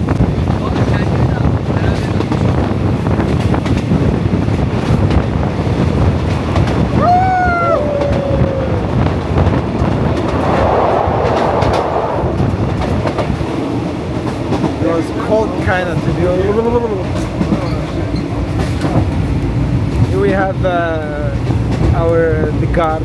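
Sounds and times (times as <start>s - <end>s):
train rumbling on rails: 0.0s - 23.0s
wheels clicking over rail joints: 12.8s - 23.0s.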